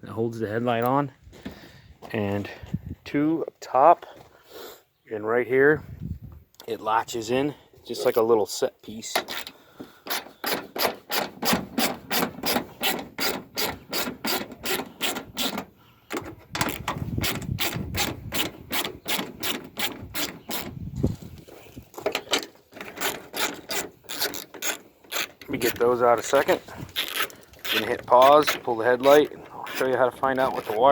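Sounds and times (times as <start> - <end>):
hand ratchet clicking: 10.1 - 20.7, 22.1 - 25.8.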